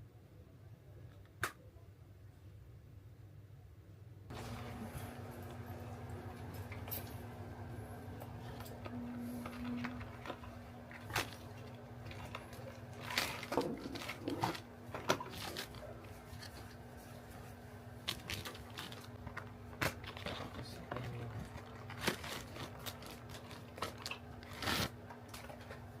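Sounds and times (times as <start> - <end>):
faint steady hum: 0.0 - 26.0
packaging rustling: 8.4 - 16.9, 18.0 - 25.9.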